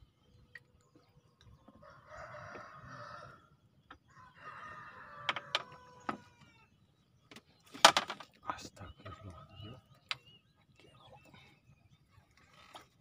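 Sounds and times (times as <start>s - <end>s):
rooster crowing: 1.8s - 3.4s, 4.1s - 6.3s.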